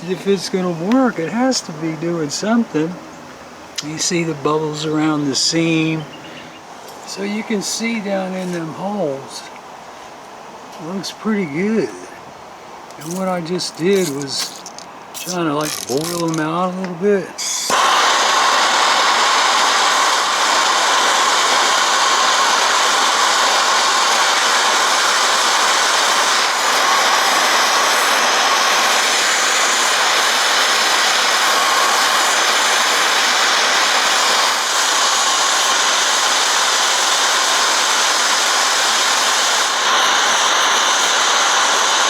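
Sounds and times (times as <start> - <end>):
blowtorch flame hissing: 0.0 - 3.0, 3.8 - 6.0, 12.9 - 16.4, 17.4 - 42.0.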